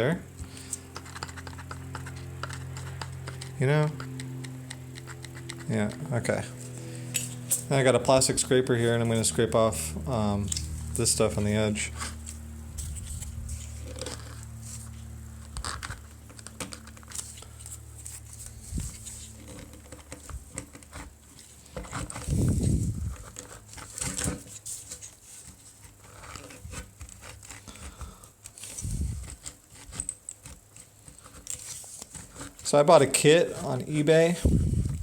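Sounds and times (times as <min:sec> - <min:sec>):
plastic scraper scraping foam: 0:07.5 - 0:35.0.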